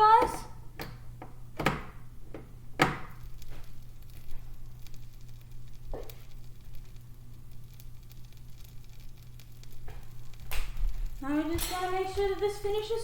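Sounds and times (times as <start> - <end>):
steady low hum: 0.0 - 13.0
sandwich sizzling in a pan: 2.9 - 13.0.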